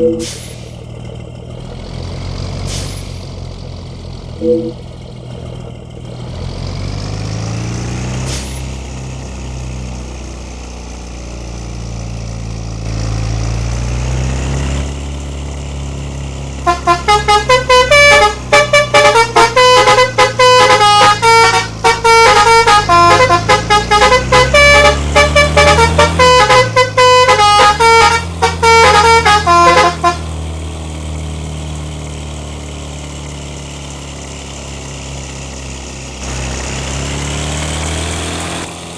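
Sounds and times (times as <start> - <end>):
bus engine rumbling: 0.0 - 38.9
multi-tone musical horn: 16.6 - 30.2.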